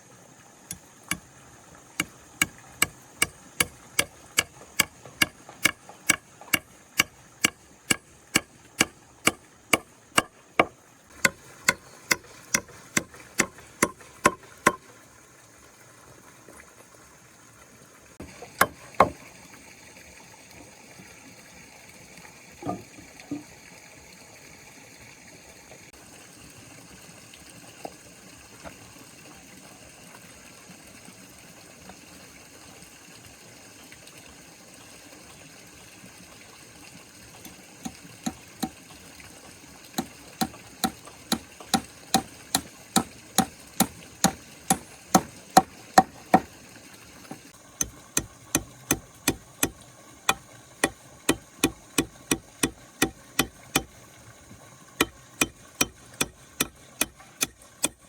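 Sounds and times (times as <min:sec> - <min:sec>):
hammer blows on wood: 0:40.4 - 0:46.5.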